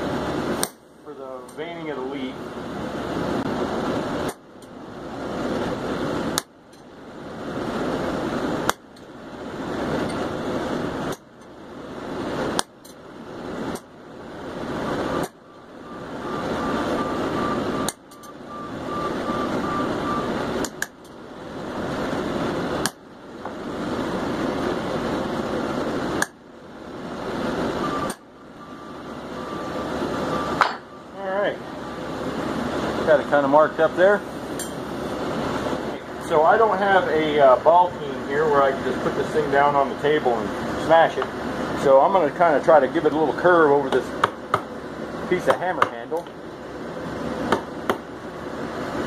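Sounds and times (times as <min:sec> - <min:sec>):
steady rushing noise: 0:00.0 - 0:49.0
hammer striking hot steel: 0:00.4 - 0:01.7, 0:04.2 - 0:04.8, 0:06.2 - 0:07.0, 0:08.6 - 0:10.4, 0:11.0 - 0:11.6, 0:12.3 - 0:13.0, 0:13.6 - 0:13.9, 0:14.9 - 0:16.6, 0:17.4 - 0:19.5, 0:20.5 - 0:21.2, 0:22.7 - 0:23.6, 0:26.1 - 0:26.4, 0:27.8 - 0:28.4, 0:29.5 - 0:31.0, 0:34.3 - 0:35.1, 0:43.0 - 0:44.8, 0:45.4 - 0:46.4, 0:47.4 - 0:48.1.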